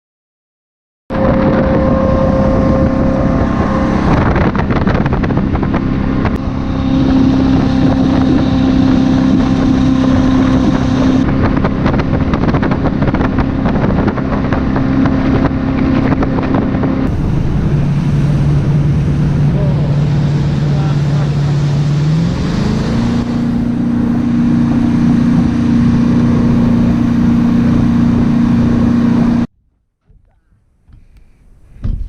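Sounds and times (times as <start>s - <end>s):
engine droning: 1.1s - 29.5s
wind buffeting microphone: 1.1s - 29.5s.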